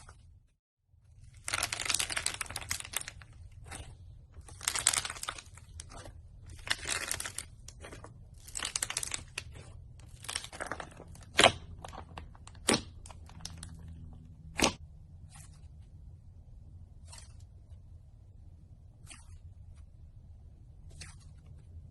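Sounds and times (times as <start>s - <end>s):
slime squishing: 1.1s - 15.8s.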